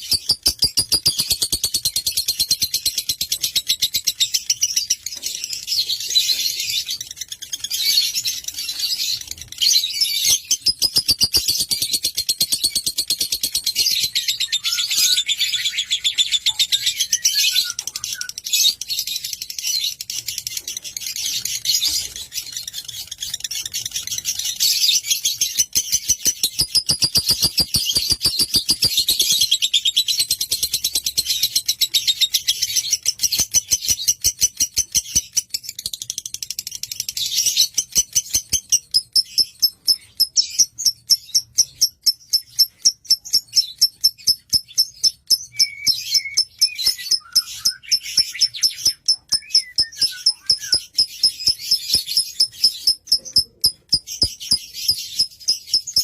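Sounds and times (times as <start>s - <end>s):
lovebird chattering: 9.2s - 14.0s, 25.4s - 30.1s, 37.6s - 56.0s.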